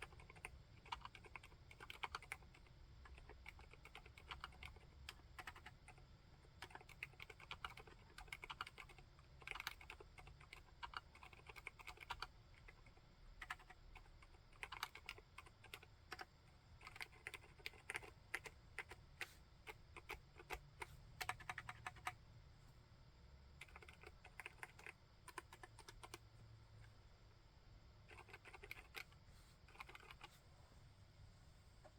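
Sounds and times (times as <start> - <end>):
muted mechanical keyboard typing: 0.0 - 22.2, 23.6 - 26.2, 28.1 - 30.3.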